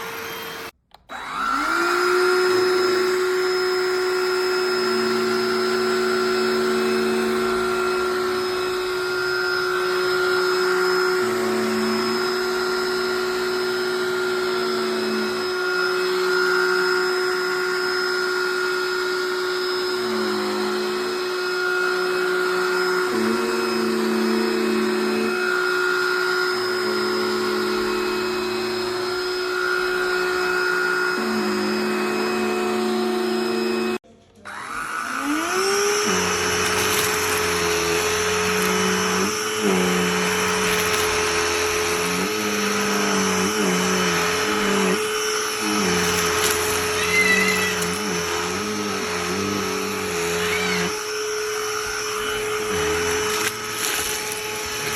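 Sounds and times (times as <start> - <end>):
handheld vacuum running: 0.0 - 54.9.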